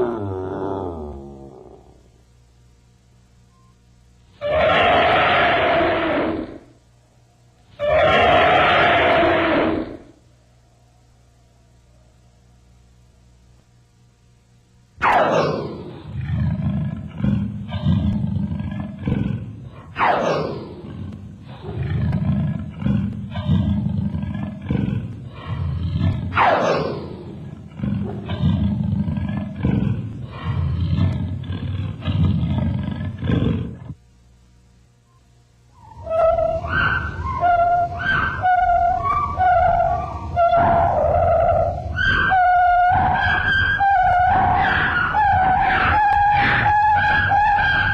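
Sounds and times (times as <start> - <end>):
animal roar with low growling: 0.0 - 2.1, 4.3 - 6.8, 7.7 - 10.2, 15.0 - 34.0, 35.8 - 47.9.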